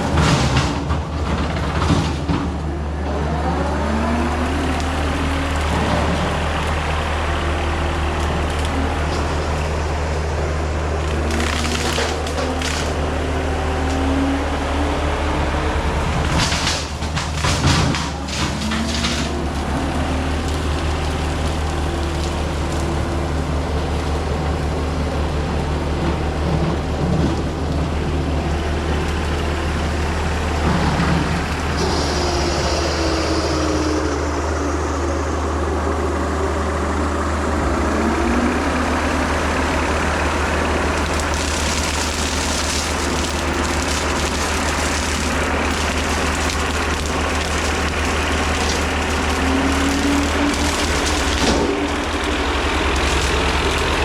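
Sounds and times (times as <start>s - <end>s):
diesel engine running: 0.0s - 54.0s
hydraulic brush cutter: 10.9s - 25.8s, 28.5s - 35.0s, 37.0s - 54.0s.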